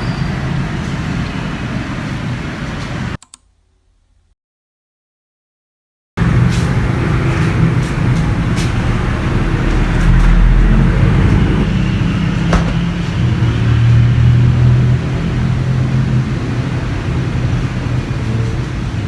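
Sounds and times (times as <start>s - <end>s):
motor vehicle running: 6.2s - 19.0s.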